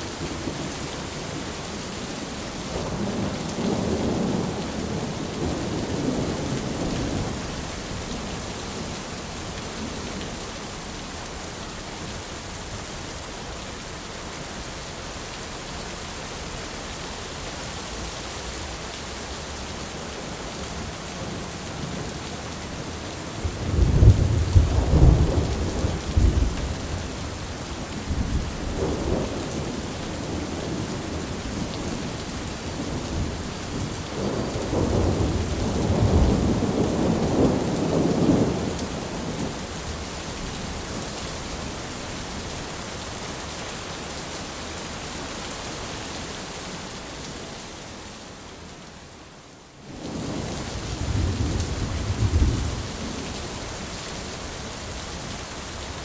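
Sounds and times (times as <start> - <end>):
heavy rain: 0.0 - 56.0
thunder crack and rumble: 23.4 - 32.0, 32.8 - 39.5, 50.0 - 53.3.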